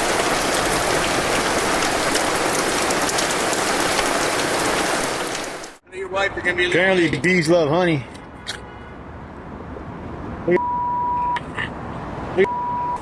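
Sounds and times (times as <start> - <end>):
heavy rain pouring: 0.0 - 5.8
raindrops striking close by: 0.0 - 5.8.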